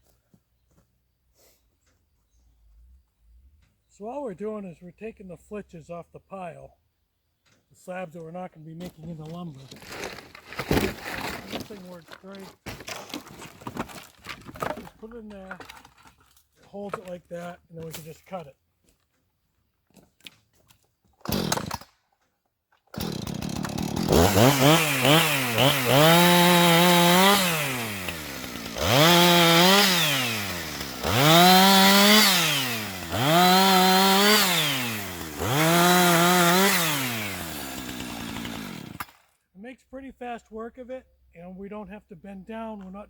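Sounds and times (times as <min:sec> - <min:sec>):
chainsaw revving and cutting wood: 0:21.2 - 0:22.0, 0:22.9 - 0:39.4.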